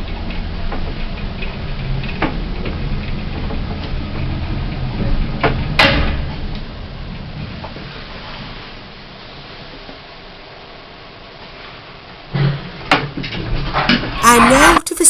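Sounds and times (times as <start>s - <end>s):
loud clunk: 5.0s - 6.4s.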